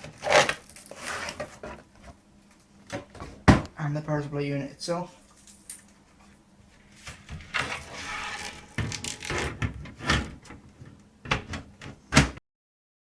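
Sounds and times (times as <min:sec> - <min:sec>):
scraping of metal parts: 0:07.4 - 0:09.7
knocks and clunks on computer case: 0:11.2 - 0:12.4.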